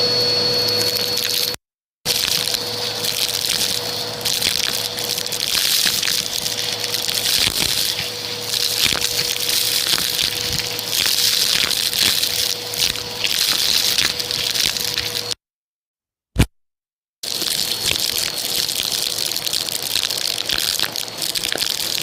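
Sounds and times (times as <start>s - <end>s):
vacuum cleaner running: 0.0s - 15.4s.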